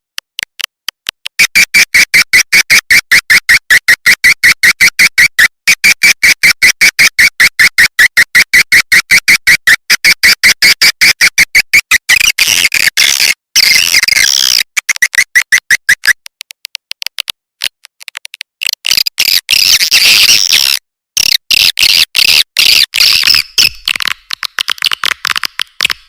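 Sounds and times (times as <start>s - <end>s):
swiftlet chirps and twittering: 21.5s - 26.0s.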